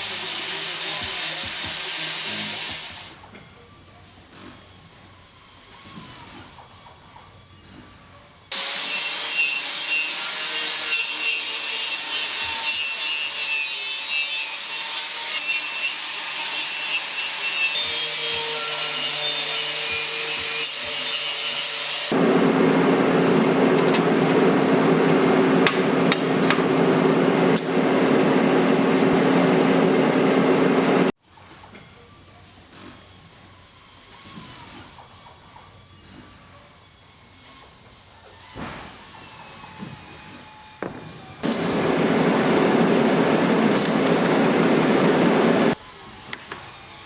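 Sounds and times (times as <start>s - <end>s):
lower-pitched power tool running: 0.0s - 13.4s, 16.0s - 31.2s, 40.1s - 45.8s
abrasive grinding on steel: 41.4s - 45.8s
sharp ticks: 43.8s - 45.8s.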